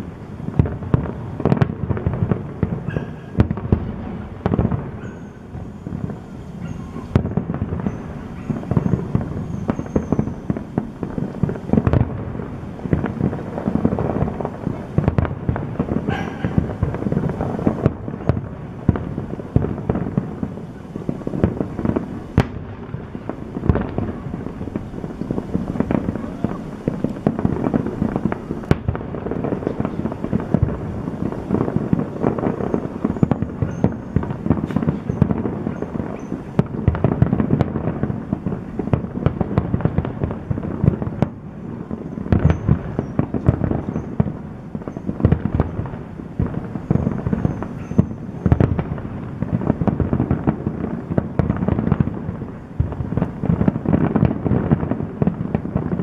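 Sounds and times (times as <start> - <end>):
fireworks bursts and crackling: 0.0 - 56.0
sharp firework bangs: 0.0 - 56.0.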